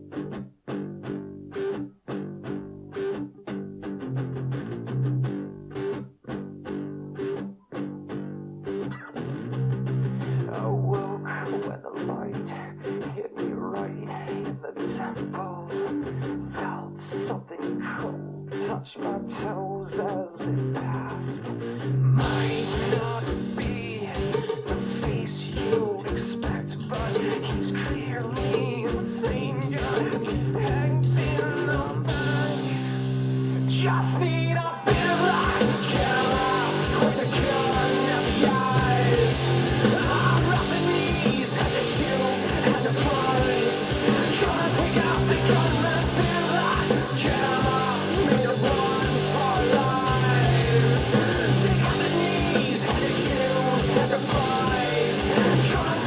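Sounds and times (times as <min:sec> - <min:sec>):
rock song through speakers: 0:00.0 - 0:56.0.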